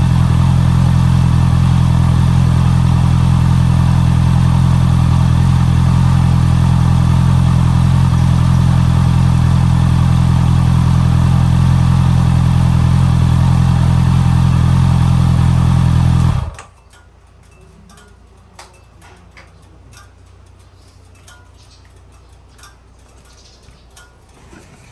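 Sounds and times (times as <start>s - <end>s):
motorcycle engine running: 0.0s - 16.8s.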